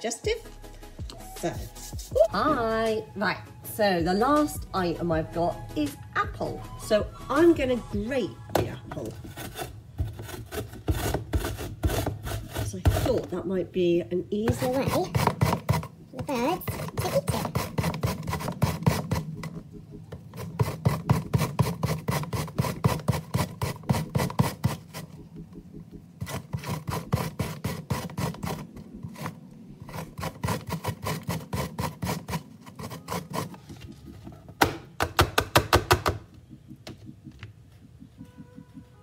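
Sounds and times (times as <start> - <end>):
apple grated on metal grater: 8.6 - 13.5, 14.5 - 19.5, 20.1 - 25.2, 26.2 - 33.7.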